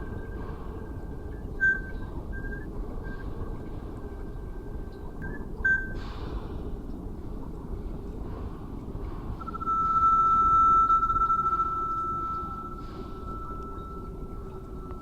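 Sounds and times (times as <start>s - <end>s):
boat engines rumbling: 0.0s - 15.0s
thin high whistle: 9.4s - 15.0s.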